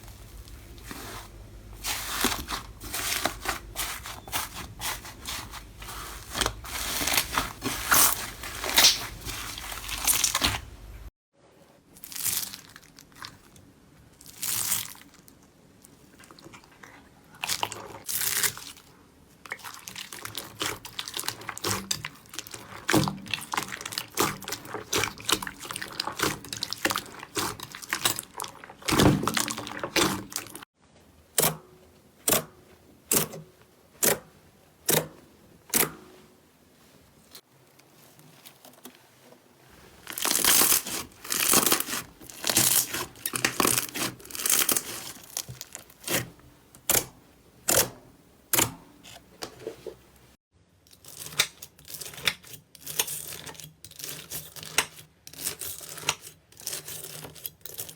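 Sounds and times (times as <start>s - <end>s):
slime crackling: 0.0s - 11.1s, 19.5s - 30.6s, 39.8s - 47.0s
slime popping: 6.0s - 10.8s.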